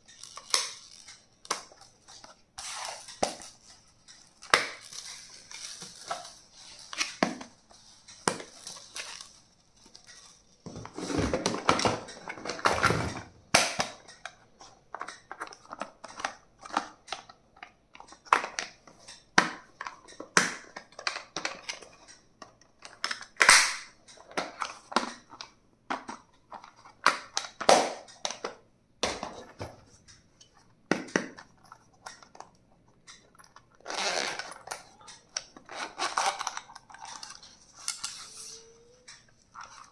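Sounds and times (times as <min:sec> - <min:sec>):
plastic clicks and snaps: 0:00.1 - 0:02.4.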